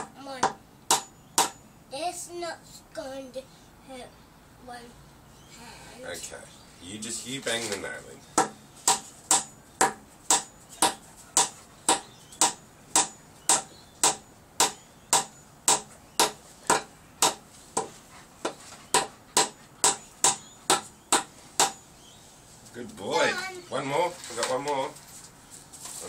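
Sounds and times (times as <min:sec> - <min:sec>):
hammer driving nail into wood: 0:08.4 - 0:17.9.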